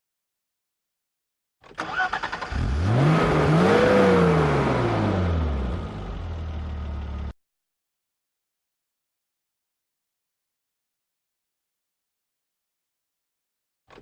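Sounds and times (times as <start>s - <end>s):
car engine starting and idling: 1.6s - 7.4s.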